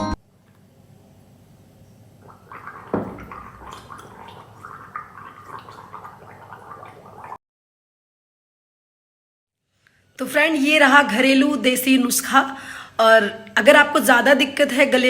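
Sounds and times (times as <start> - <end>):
woman gargling: 2.3 - 7.4.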